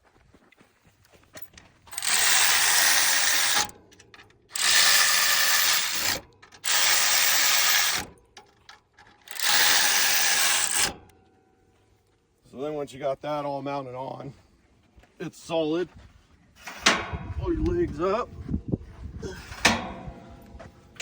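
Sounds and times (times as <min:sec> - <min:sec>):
power tool driving bolts: 0:01.9 - 0:11.1, 0:16.6 - 0:17.3, 0:19.5 - 0:21.0.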